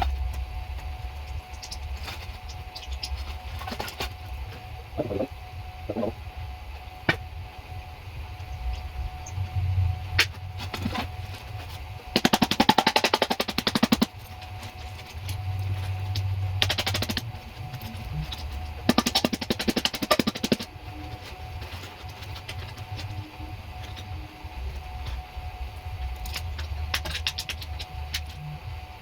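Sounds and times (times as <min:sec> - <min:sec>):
power tool hammering: 0:12.1 - 0:14.1, 0:18.9 - 0:20.7.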